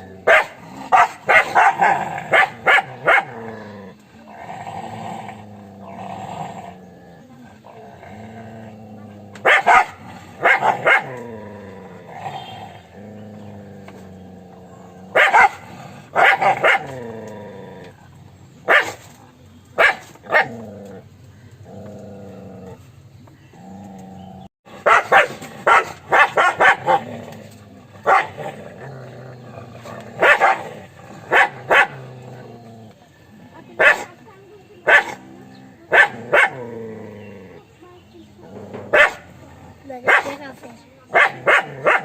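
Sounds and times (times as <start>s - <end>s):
dog barking: 0.2s - 3.4s, 9.4s - 11.2s, 15.1s - 15.6s, 16.2s - 16.9s, 18.7s - 19.0s, 19.8s - 20.5s, 24.8s - 27.0s, 28.0s - 28.4s, 30.2s - 30.7s, 31.3s - 32.0s, 33.8s - 34.2s, 34.8s - 35.2s, 35.9s - 36.7s, 38.9s - 39.3s, 40.0s - 40.4s, 41.1s - 42.0s.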